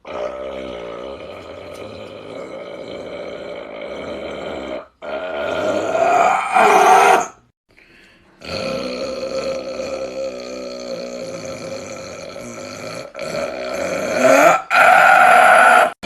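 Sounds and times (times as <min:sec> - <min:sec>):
person burping: 0:08.4 - 0:15.4.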